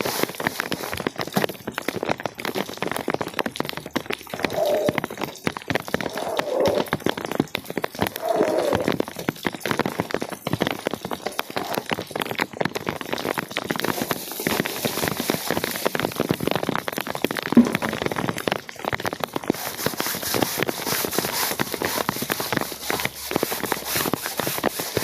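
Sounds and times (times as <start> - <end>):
rain falling: 0.0 - 25.0
high hiss: 19.6 - 25.0.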